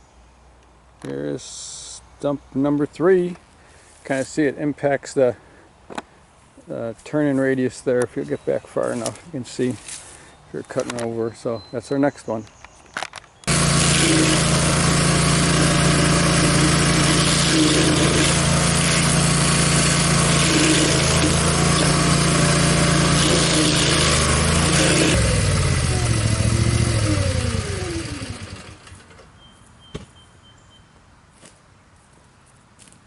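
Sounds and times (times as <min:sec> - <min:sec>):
stump grinder running: 0:13.5 - 0:29.1.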